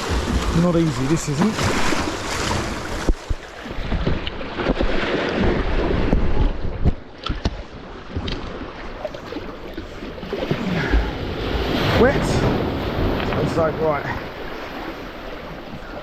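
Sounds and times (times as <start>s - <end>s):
sea surf washing: 0.0s - 3.9s, 9.1s - 16.0s
wind rumbling on microphone: 0.0s - 8.6s.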